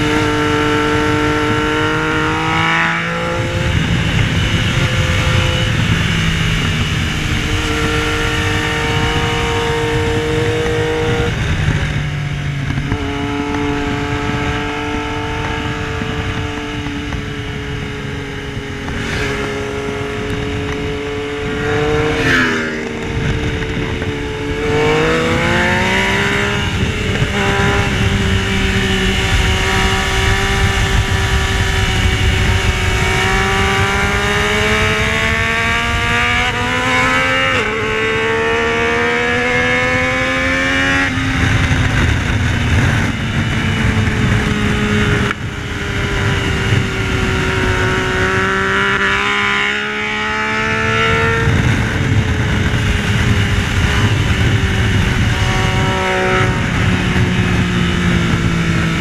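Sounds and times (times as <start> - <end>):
motorcycle engine running hard: 0.0 - 59.0.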